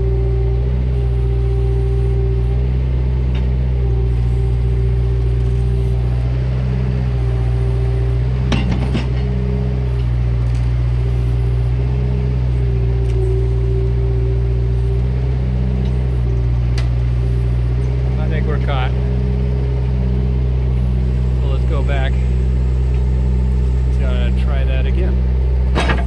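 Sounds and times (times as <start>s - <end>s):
excavator diesel engine running: 0.0s - 26.0s
hydraulic whine: 0.0s - 26.0s
metal clank: 8.4s - 9.4s, 25.6s - 26.0s.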